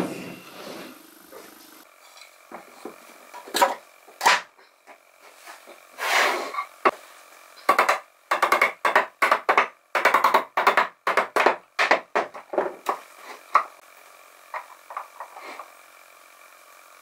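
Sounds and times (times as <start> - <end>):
hand tool strokes on wood: 5.2 - 7.3.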